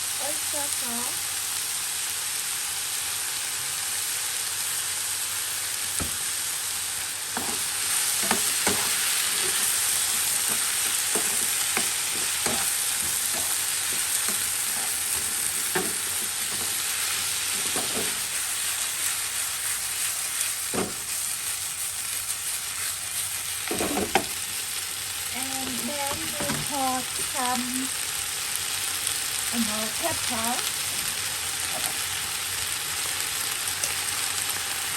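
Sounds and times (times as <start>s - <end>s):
food sizzling in a pan: 0.0s - 34.9s
utensil scraping a pan: 7.4s - 18.4s.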